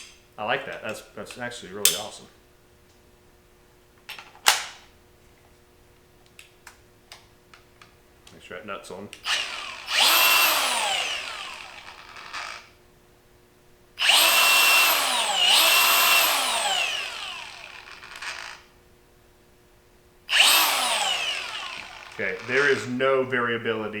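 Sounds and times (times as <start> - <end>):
angle grinder whining down: 9.2 - 12.8, 14.0 - 18.8, 20.3 - 24.0.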